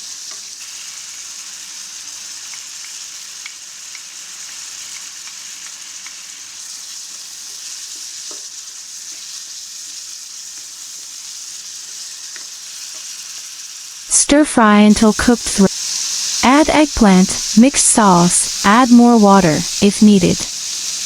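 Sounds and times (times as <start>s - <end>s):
meat sizzling in oil: 0.0s - 14.1s, 14.9s - 21.0s
faint stirring ticks: 2.5s - 6.2s.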